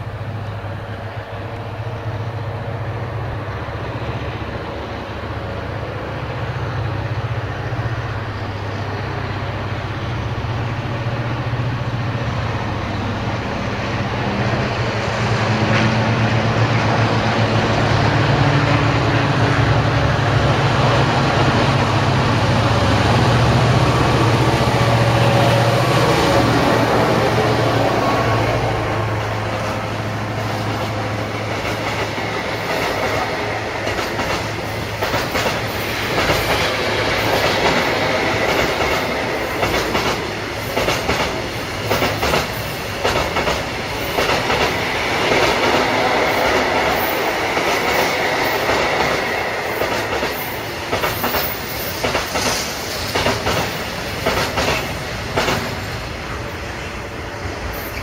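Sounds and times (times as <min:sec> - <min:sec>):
diesel locomotive drone: 0:00.0 - 0:58.0
wheels clacking over rail joints: 0:25.4 - 0:56.4.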